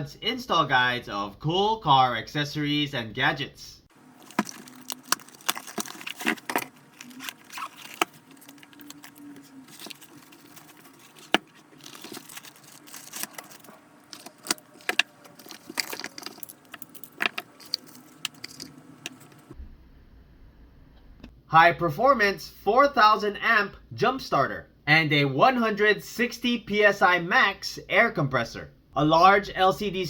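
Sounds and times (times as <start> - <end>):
hard objects clicking and rattling: 4.1 - 19.6.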